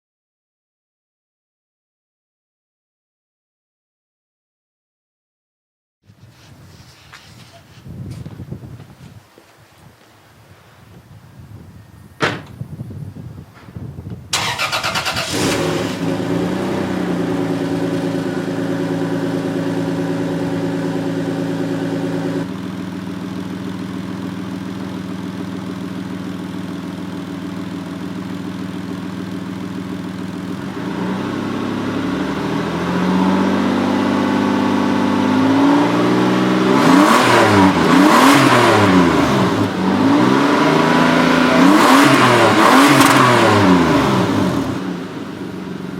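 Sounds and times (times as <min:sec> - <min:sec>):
car engine idling and revving: 0:14.3 - 0:45.9.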